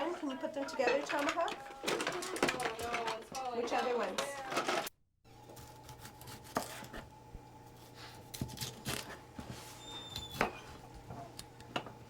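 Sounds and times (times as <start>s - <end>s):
low electrical hum: 0.0s - 12.0s
faint high squeak: 9.8s - 10.8s.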